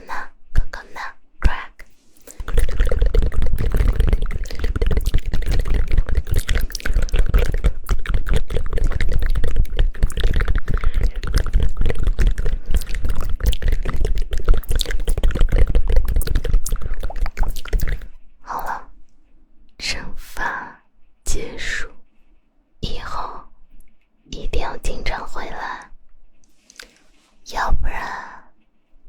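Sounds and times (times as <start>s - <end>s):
fast patter of clicks and taps: 2.4s - 18.0s.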